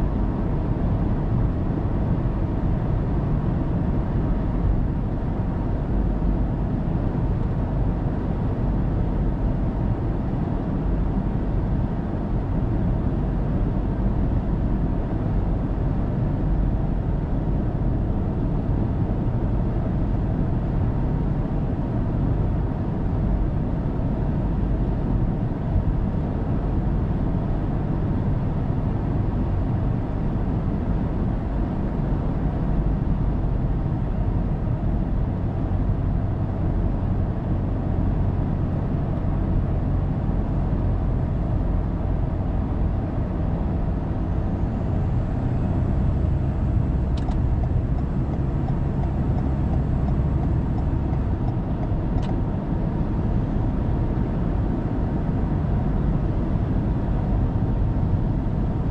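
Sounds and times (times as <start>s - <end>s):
car road and engine noise: 0.0s - 58.9s
light ticks: 50.8s - 52.4s.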